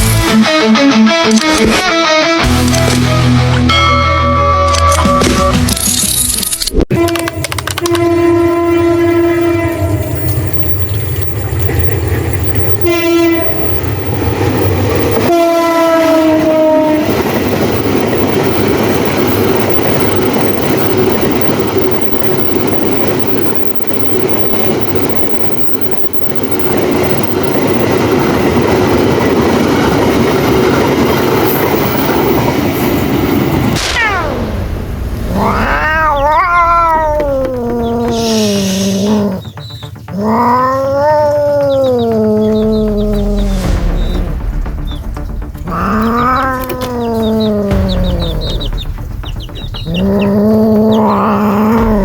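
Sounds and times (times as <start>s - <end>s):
train horn blasts: 6.9s - 10.7s, 12.8s - 14.1s, 15.1s - 17.4s
passing train rumble and rattle: 6.9s - 52.0s.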